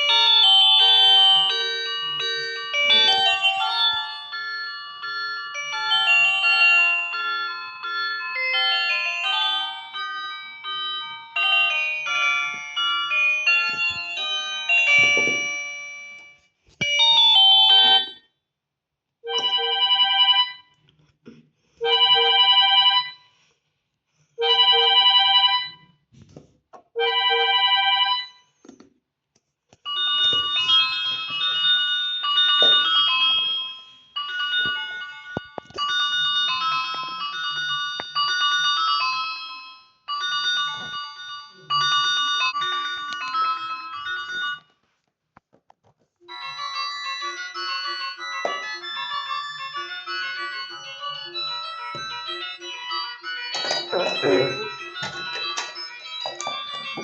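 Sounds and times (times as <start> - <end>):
phone chime: 0.0 - 18.2, 29.9 - 38.9, 46.3 - 57.0
electronic phone ringtone melody: 0.0 - 18.3, 19.2 - 20.8, 21.8 - 23.4, 24.4 - 26.0, 27.0 - 28.6, 29.9 - 44.8, 46.2 - 57.0.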